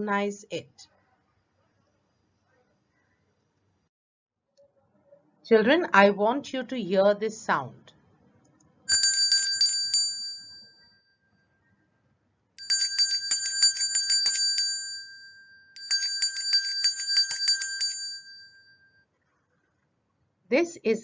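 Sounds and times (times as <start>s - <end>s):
bell ringing in rapid trills: 8.9s - 10.6s, 12.6s - 18.7s.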